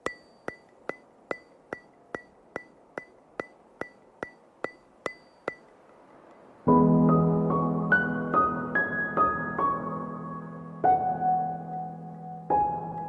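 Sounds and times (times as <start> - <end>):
steady ringing ticks: 0.0 - 6.6.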